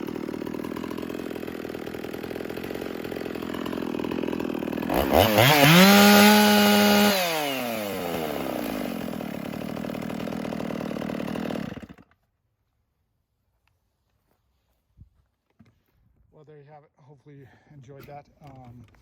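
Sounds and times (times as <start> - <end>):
chainsaw revving: 0.0 - 12.1.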